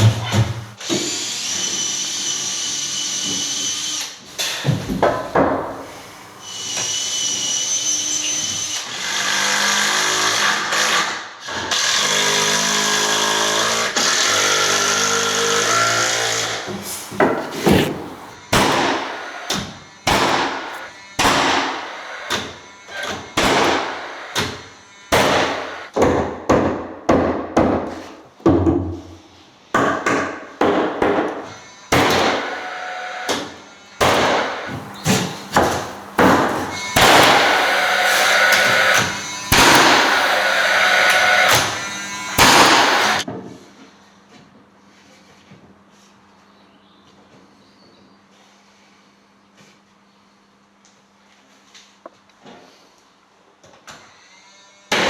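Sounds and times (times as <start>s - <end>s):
power tool motor whine: 11.8s - 25.9s, 31.5s - 43.2s
sharp knocks: 34.0s - 43.2s.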